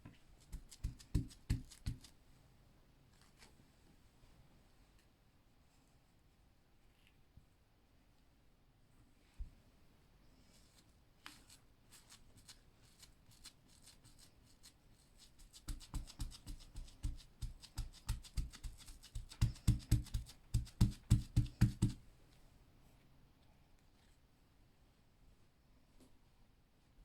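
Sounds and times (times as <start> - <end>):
sponge patting on fabric: 0.0 - 2.2, 11.2 - 22.0.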